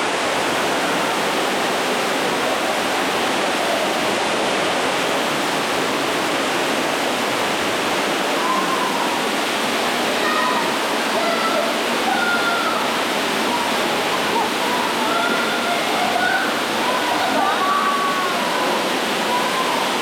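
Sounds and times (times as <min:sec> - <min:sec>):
waterfall rushing: 0:00.0 - 0:20.0
faint voices: 0:08.3 - 0:20.0.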